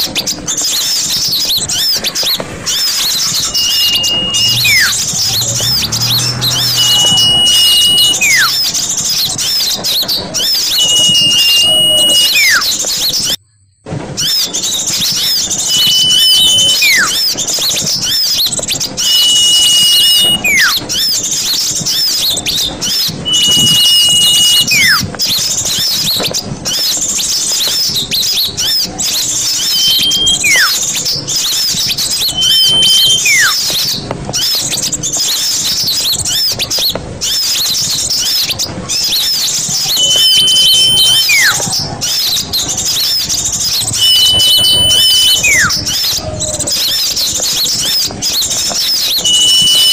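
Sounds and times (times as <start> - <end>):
small birds chattering: 0.0 - 13.4, 14.6 - 49.9
high falling whistle: 0.6 - 8.8, 10.4 - 12.9, 15.6 - 17.4, 19.0 - 20.8, 23.3 - 25.1, 29.5 - 30.8, 32.0 - 33.7, 39.1 - 42.2, 42.9 - 46.2, 49.0 - 49.9.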